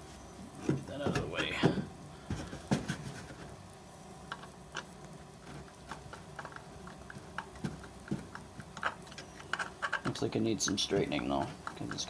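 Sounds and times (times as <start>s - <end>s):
hand plane parts clicking: 5.9s - 12.0s.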